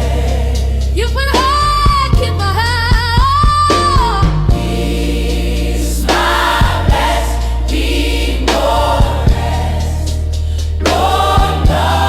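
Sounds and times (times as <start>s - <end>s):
choir singing gospel: 0.0s - 1.7s, 4.4s - 12.0s
bass and drum beat: 0.0s - 12.0s.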